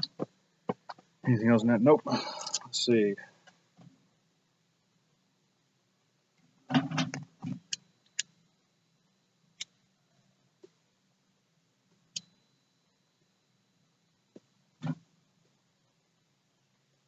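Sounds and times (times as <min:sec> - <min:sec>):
knocks and rustling: 0:00.0 - 0:01.1.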